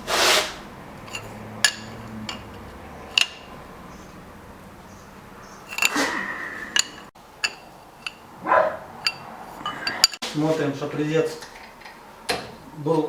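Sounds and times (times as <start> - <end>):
short scrape with squeak: 0.0 - 0.6, 5.6 - 7.1
metallic clinks of wrench and clamps: 1.1 - 3.5, 5.7 - 6.0, 9.0 - 10.2.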